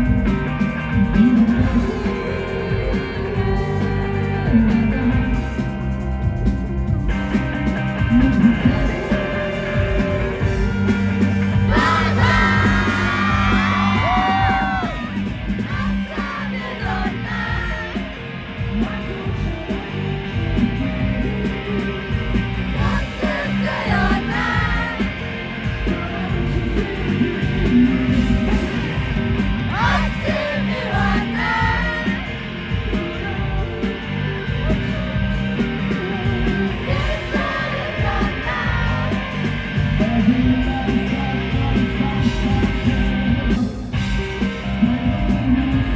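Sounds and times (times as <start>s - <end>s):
rock band playing live: 0.0s - 45.9s
man singing lead vocal: 1.2s - 5.5s, 8.3s - 11.0s, 11.6s - 29.0s, 29.7s - 34.8s, 35.9s - 43.1s.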